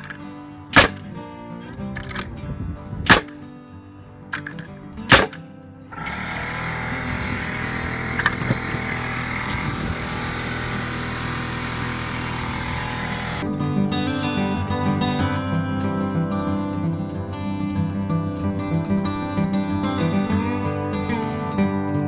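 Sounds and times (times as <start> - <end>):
guitar music: 0.0 - 22.0
air compressor running: 6.0 - 13.4.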